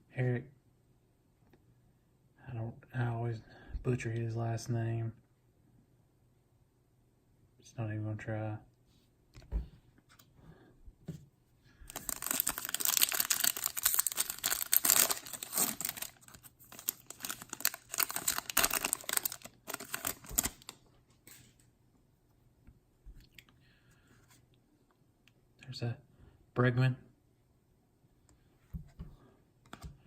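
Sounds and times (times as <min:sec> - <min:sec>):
foil wrapper tearing and crinkling: 0:11.9 - 0:20.8.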